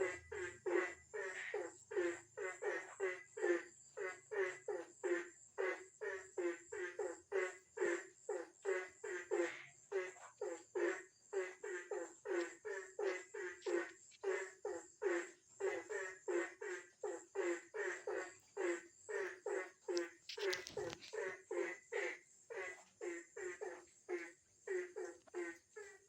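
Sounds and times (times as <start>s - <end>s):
frogs croaking: 0.0s - 26.0s
high-pitched insect hum: 6.1s - 23.6s.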